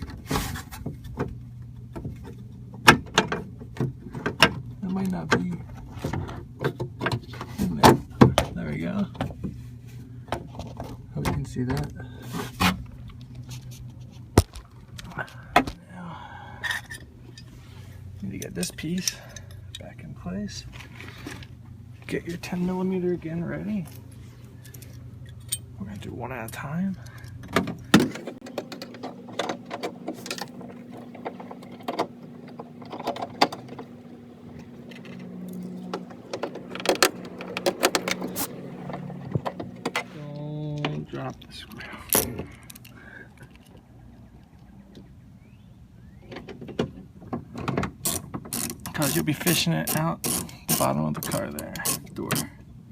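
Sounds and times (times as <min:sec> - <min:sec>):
parts clicking and knocking: 0:28.0 - 0:40.3
steady low hum: 0:28.0 - 0:40.4.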